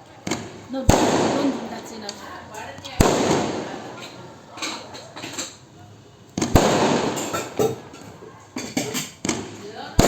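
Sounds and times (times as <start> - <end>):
loud firecracker bang: 0.2 - 2.0, 3.0 - 4.0, 6.4 - 7.9
firecracker pops: 0.2 - 2.2, 2.9 - 5.6, 6.3 - 10.0.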